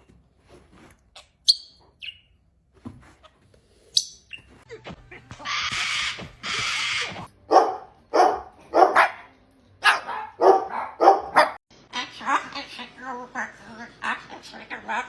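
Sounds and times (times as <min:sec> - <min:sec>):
dog barking: 0:07.5 - 0:11.6.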